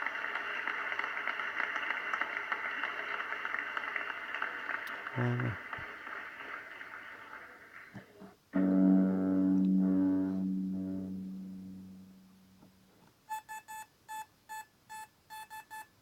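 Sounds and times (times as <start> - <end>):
ringing musical tone: 8.6 - 12.8
short keypad beeps: 13.3 - 15.9.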